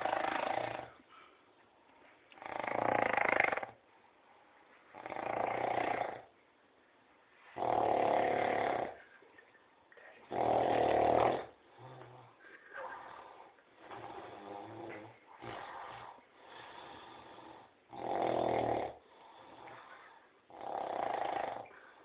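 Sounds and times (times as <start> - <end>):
rasping snores: 0.0 - 1.0, 2.4 - 3.8, 5.0 - 6.3, 7.6 - 9.0, 10.3 - 21.9
quiet breathing: 0.0 - 2.5, 7.1 - 10.4, 11.4 - 22.0.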